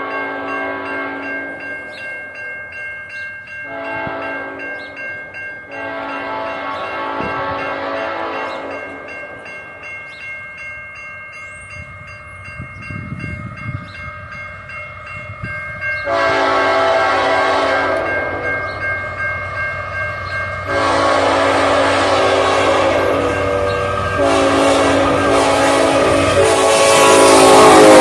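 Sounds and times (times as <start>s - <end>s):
low rumble of passing train: 0.0s - 28.0s
locomotive air horn chord: 3.7s - 4.7s, 5.7s - 8.8s, 16.0s - 18.6s, 20.6s - 28.0s.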